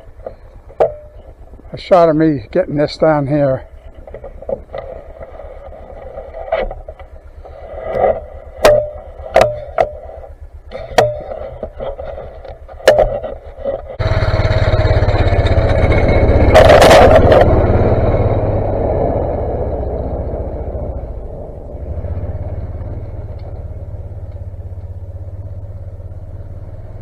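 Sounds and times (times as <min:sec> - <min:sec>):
snowplow engine: 0:00.0 - 0:27.0
plow scraping rush: 0:02.8 - 0:27.0
clicks and knocks: 0:07.9 - 0:14.0.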